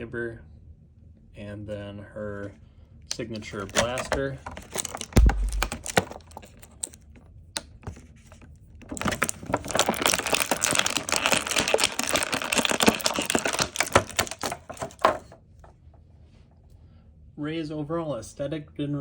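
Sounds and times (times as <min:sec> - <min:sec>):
plastic packaging clicking and crinkling: 0:03.1 - 0:15.4.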